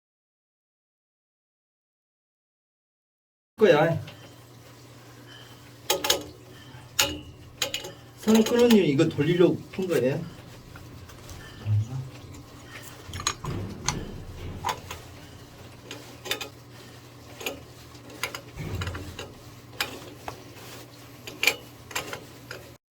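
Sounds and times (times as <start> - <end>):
faint low hum: 6.6 - 15.8
metallic clicks and knocks: 7.0 - 8.9, 10.4 - 16.6, 17.4 - 20.4.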